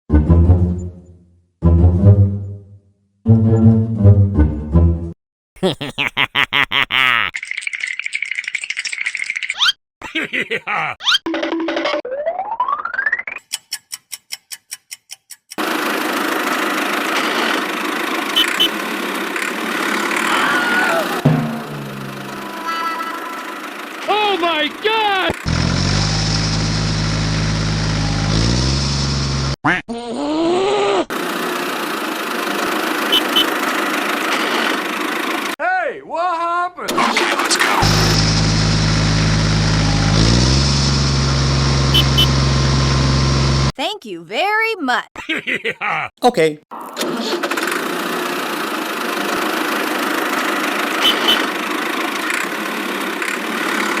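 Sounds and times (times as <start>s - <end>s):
engine idling: 15.6s - 20.4s, 21.1s - 28.4s, 31.2s - 35.5s, 37.8s - 43.7s
small motor running: 31.1s - 35.3s, 37.8s - 43.7s.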